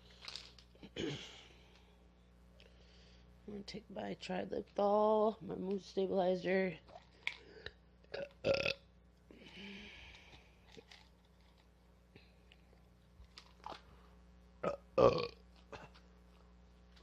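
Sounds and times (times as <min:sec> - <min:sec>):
woman burping: 0:00.9 - 0:01.4, 0:08.1 - 0:08.8, 0:14.6 - 0:15.9.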